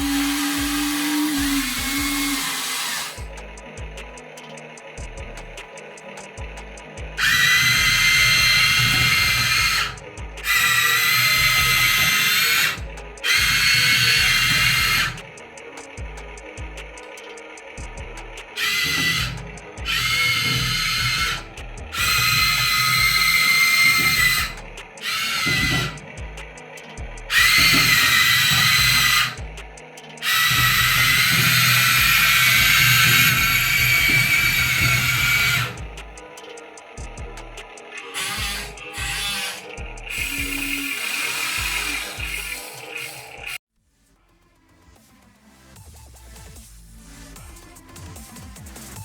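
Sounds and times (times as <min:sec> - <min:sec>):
electric motors whining: 0:00.0 - 0:43.6.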